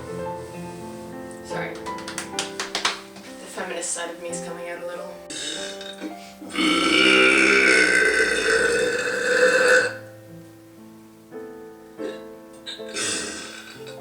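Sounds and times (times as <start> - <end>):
background music: 0.0 - 14.0
woman belching loudly: 5.3 - 10.0, 12.0 - 14.0.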